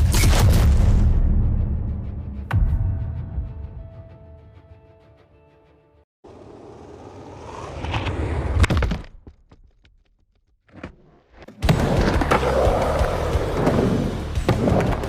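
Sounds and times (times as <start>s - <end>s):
skateboard wheels rolling on pavement: 6.3s - 9.9s, 10.7s - 15.0s.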